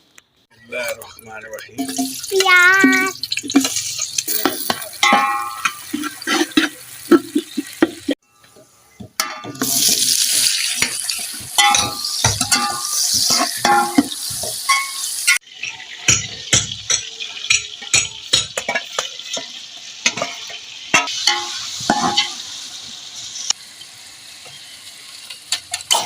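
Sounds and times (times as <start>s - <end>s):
onions sizzling in hot oil: 1.8s - 26.0s
spoon clattering against pot: 2.9s - 9.8s, 10.8s - 22.4s.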